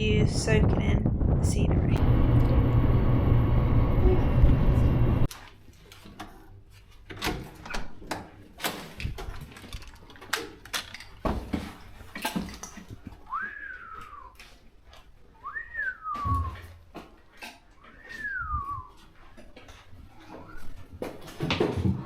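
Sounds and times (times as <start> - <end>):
wind buffeting microphone: 0.0 - 5.3.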